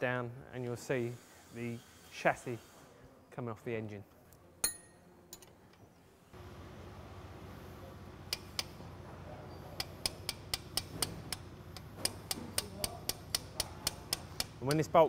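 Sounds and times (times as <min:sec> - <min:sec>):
ratchet wrench clicking: 0:08.3 - 0:08.8, 0:09.8 - 0:15.0.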